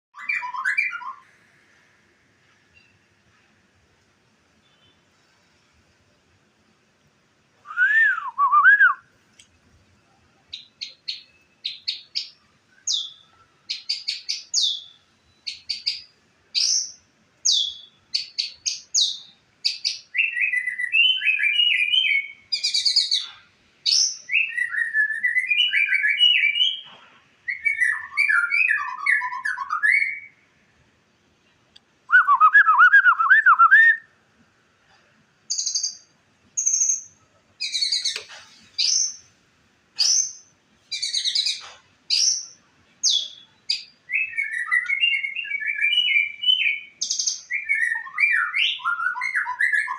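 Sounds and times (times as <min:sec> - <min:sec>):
songbird singing: 0:00.1 - 0:01.4, 0:02.5 - 0:03.1, 0:04.6 - 0:05.2, 0:07.6 - 0:30.5, 0:35.5 - 0:39.4, 0:40.0 - 0:49.9.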